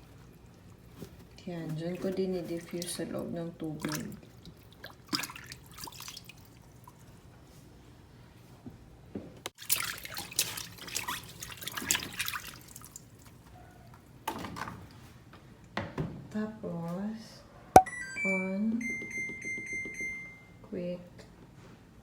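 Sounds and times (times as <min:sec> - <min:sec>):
water splashing in washing machine: 0:00.0 - 0:07.3, 0:09.6 - 0:13.5.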